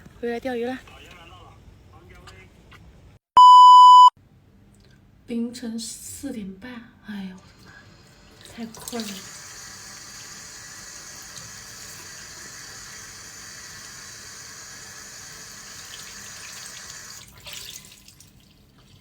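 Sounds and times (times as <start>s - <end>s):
tap water running into sink: 8.2s - 19.0s.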